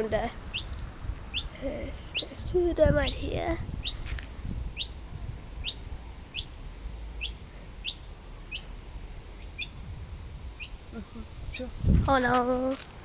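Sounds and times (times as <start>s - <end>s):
bird chick calling: 0.4s - 4.1s, 4.7s - 6.6s, 7.2s - 8.8s, 9.4s - 9.8s, 10.6s - 11.8s.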